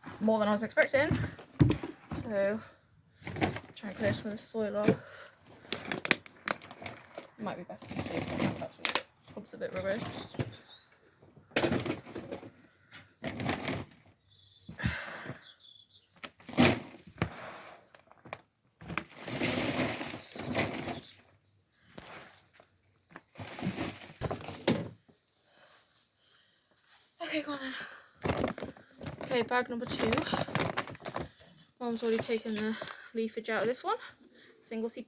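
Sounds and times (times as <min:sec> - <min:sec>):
soil rustling and scraping: 0:01.9 - 0:10.8, 0:16.3 - 0:24.7.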